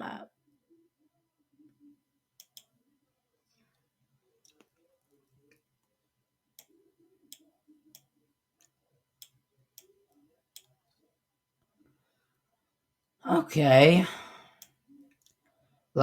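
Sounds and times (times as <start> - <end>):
faint computer mouse clicks: 2.4 - 2.7, 10.6 - 10.8.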